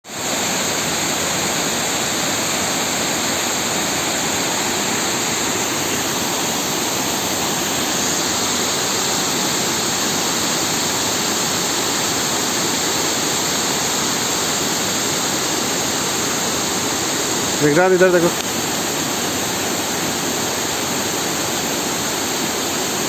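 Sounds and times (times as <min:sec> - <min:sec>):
waterfall rushing: 0:00.1 - 0:23.0.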